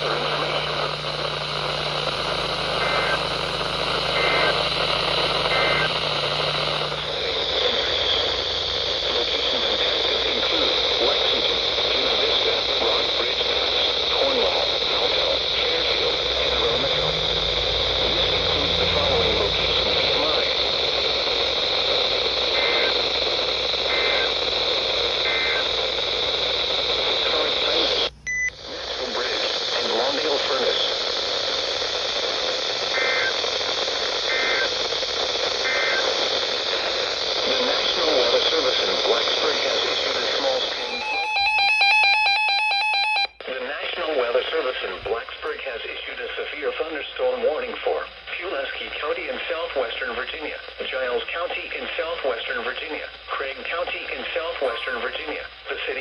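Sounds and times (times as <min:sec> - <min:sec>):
two-tone data bursts: 0:00.0 - 0:43.4
radio static hiss: 0:00.0 - 0:56.0
low hum: 0:14.8 - 0:29.6.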